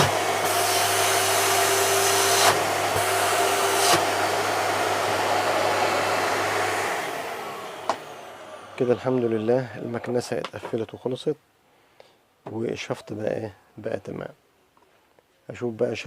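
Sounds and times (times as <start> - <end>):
vacuum cleaner motor running: 0.0 - 9.8.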